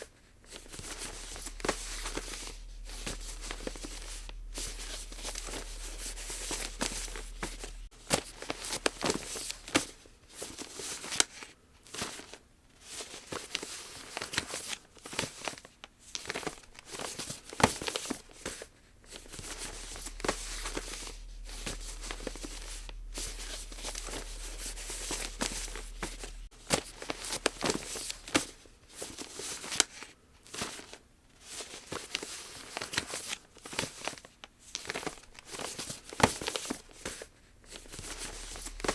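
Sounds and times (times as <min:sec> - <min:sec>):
low electrical hum: 0:00.4 - 0:10.2, 0:18.2 - 0:28.8, 0:36.8 - 0:38.9.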